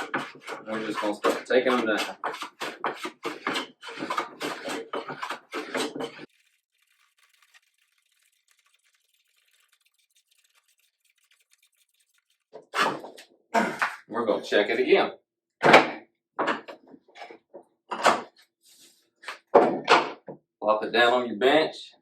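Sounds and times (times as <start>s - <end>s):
hand plane scraping wood: 0.0s - 6.3s.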